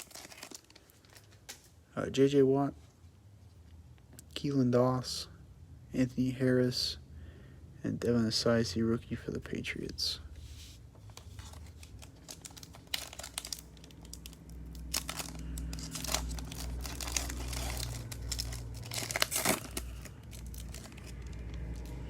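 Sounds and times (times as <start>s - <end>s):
foil wrapper tearing and crinkling: 0.0s - 1.6s, 11.1s - 22.0s.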